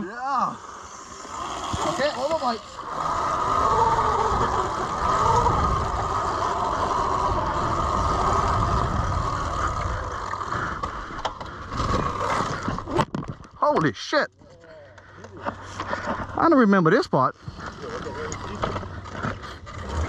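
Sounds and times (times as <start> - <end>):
electric dirt bike motor whine: 0.0 - 13.1, 17.4 - 20.0.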